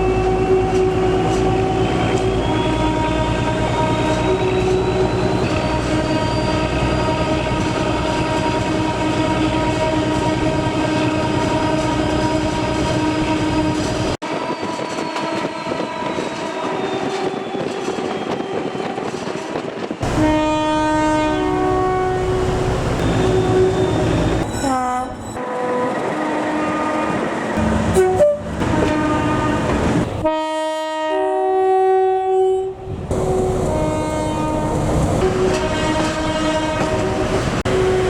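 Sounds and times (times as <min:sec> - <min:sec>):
train horn: 0:00.0 - 0:38.0
train running past: 0:00.0 - 0:38.0
two-tone horn short notes: 0:27.6 - 0:32.7.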